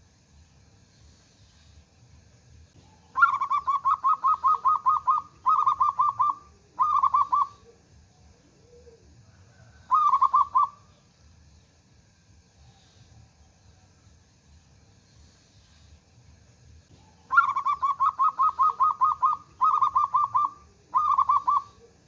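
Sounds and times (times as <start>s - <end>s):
dove cooing: 2.8s - 10.9s, 16.9s - 22.0s.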